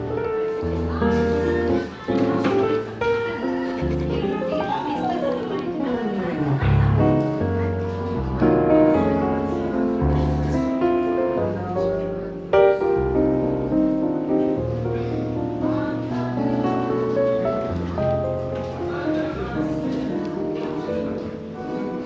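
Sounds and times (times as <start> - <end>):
jazz piano chords: 0.0 - 22.0
walking bass line: 5.9 - 15.0.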